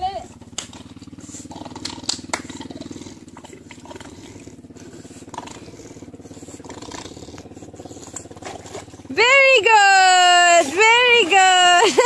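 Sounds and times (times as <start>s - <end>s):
engine running steadily: 0.0s - 12.0s.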